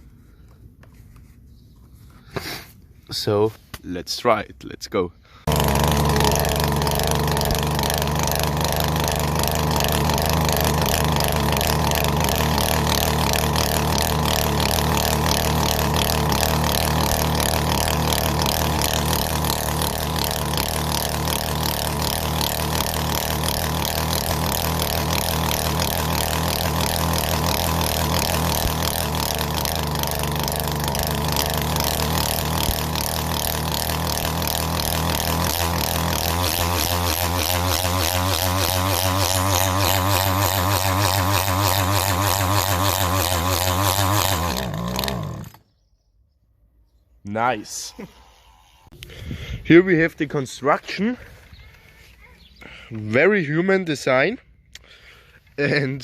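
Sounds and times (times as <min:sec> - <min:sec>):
chainsaw engine at high revs: 0:05.3 - 0:45.6.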